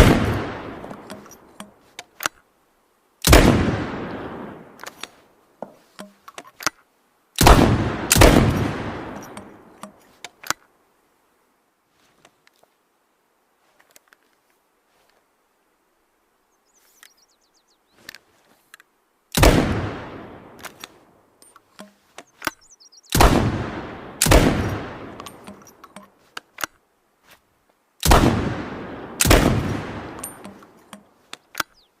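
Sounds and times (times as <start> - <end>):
shotgun shots: 0.0 - 1.0, 3.2 - 4.7, 7.4 - 9.4, 19.4 - 20.6, 23.1 - 25.4, 28.0 - 30.5
gun reloading clicks: 20.6 - 22.6.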